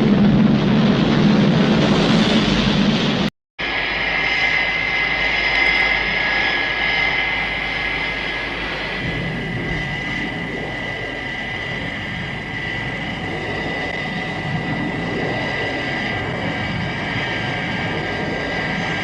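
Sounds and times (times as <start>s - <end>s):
jet engine whine and rumble: 0.0s - 19.0s.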